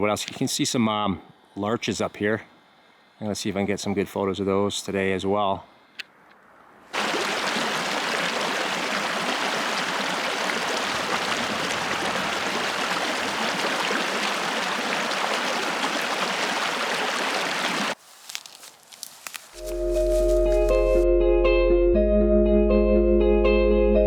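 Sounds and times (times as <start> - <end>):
mountain stream rushing water: 6.9 - 18.4.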